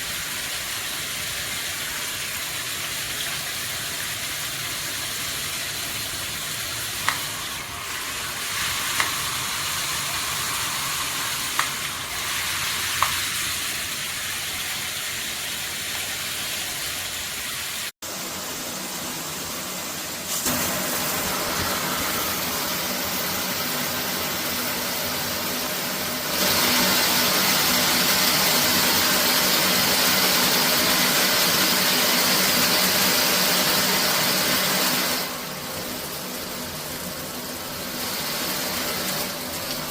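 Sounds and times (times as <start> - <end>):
shower water spraying: 0.0 - 39.9.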